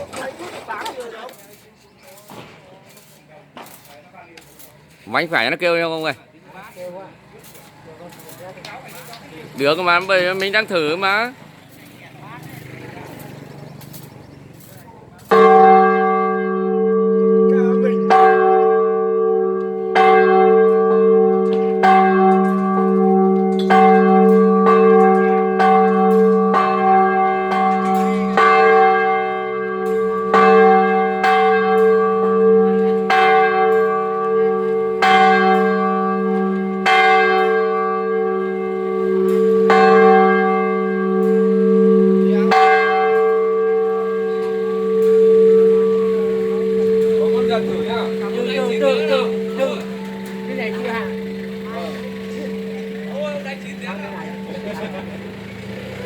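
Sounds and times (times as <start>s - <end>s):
large church bell ringing: 7.4s - 11.4s, 15.2s - 56.0s.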